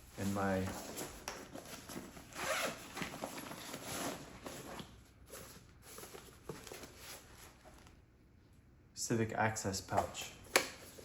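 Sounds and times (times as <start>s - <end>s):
zipper on fabric bag: 2.4s - 2.8s.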